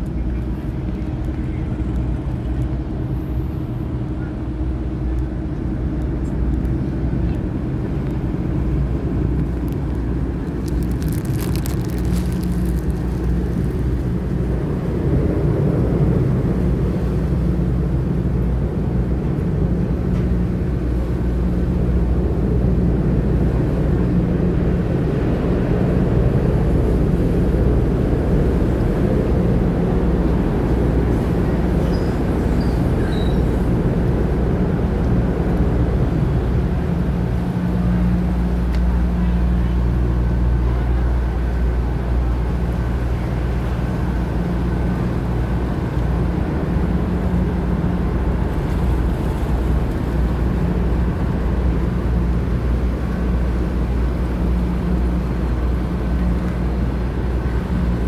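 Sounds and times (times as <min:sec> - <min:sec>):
patter of clicks: 0:09.4 - 0:14.1.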